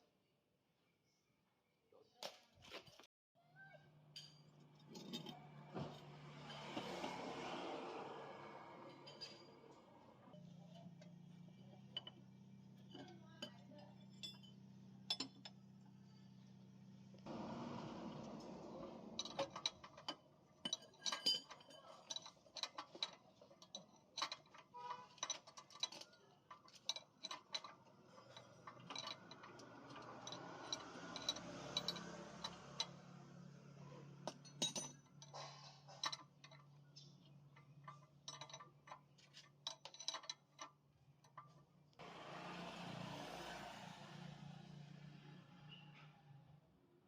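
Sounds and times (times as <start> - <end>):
metal tools clinking: 4.2 - 6.8, 11.8 - 15.6, 19.2 - 33.0, 34.3 - 41.5.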